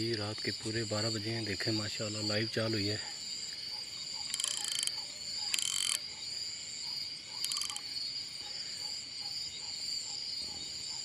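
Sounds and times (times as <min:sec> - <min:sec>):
crickets and insects chirring: 0:00.0 - 0:11.0
rapid rattling call: 0:04.1 - 0:06.2, 0:07.3 - 0:07.9.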